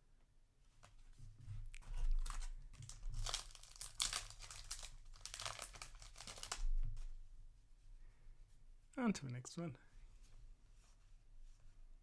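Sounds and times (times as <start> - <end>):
foil wrapper crinkling: 2.1 - 6.7.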